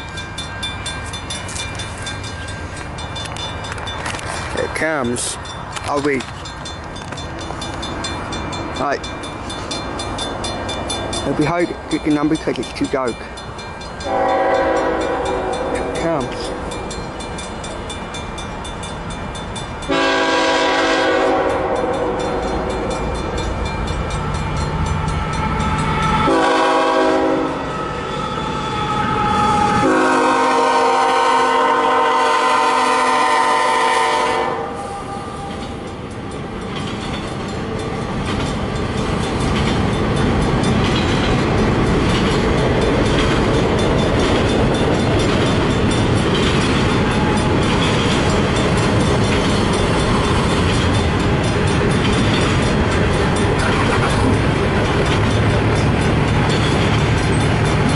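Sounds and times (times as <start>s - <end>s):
train rumble: 0.0s - 57.9s
locomotive air horn blasts: 14.0s - 16.0s, 19.9s - 22.4s, 26.2s - 27.7s, 29.2s - 35.6s
wheels clattering over rails: 35.4s - 57.9s.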